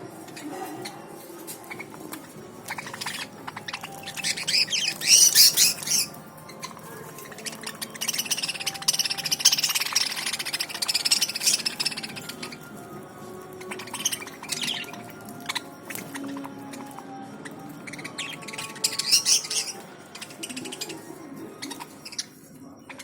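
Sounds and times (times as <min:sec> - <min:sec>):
budgerigars chattering and chirping: 0:00.2 - 0:23.0.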